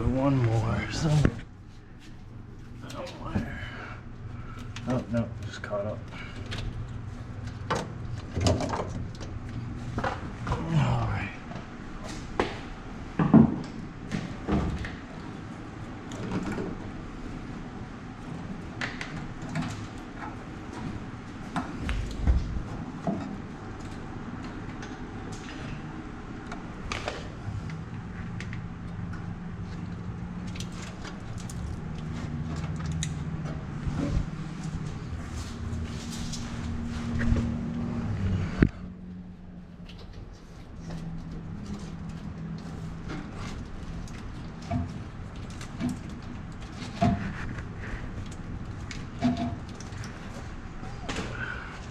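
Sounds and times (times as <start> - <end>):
steady low hum: 0.0 - 51.9
clicks knocks and rattles of hand work: 39.8 - 51.9.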